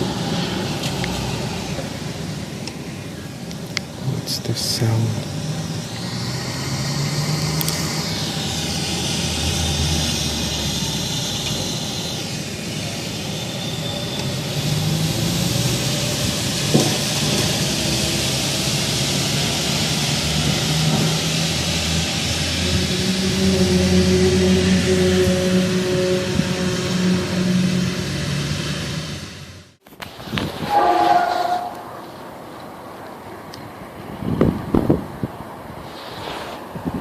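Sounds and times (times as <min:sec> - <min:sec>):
low droning tones: 0:00.0 - 0:29.8
steady rushing noise: 0:00.0 - 0:37.0
high tone sliding downward: 0:04.0 - 0:29.8, 0:30.6 - 0:32.4.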